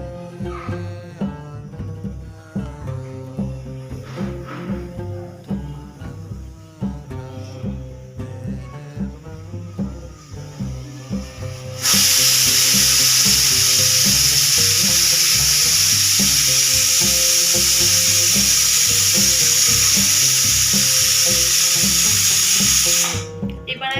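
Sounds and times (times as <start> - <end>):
background music with beat: 0.0 - 23.9
pressure cooker whistle hissing: 11.6 - 23.4.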